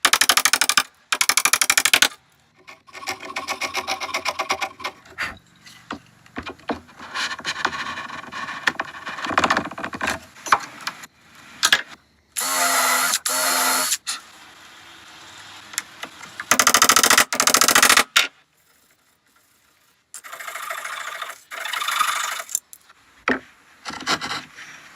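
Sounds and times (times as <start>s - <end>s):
wood rubbing and scraping: 2.6s - 11.6s
power tool bursts: 12.4s - 14.2s.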